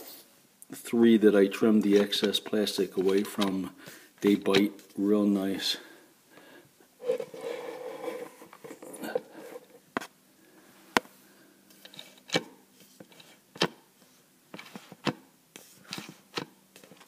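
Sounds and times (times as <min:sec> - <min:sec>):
plastic rubbing: 0:07.0 - 0:10.1.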